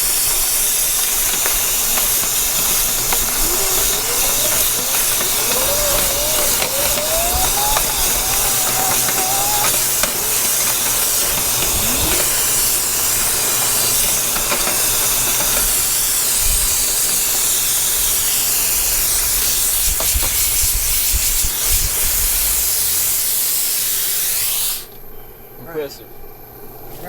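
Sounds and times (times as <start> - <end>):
air rushing through dryer vent: 0.0 - 17.4
low motor hum: 1.3 - 12.8.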